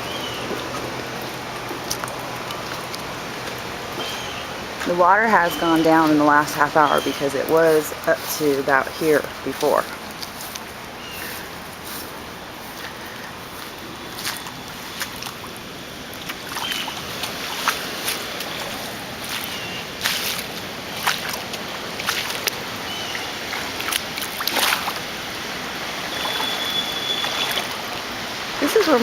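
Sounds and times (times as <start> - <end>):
wading splashes: 0.0 - 29.0
water sloshing around legs: 0.0 - 29.0.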